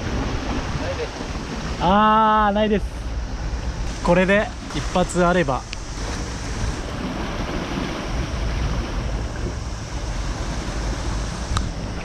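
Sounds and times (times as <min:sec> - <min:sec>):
waves washing on shore: 0:00.0 - 0:12.0
wind rumbling on microphone: 0:00.0 - 0:12.0.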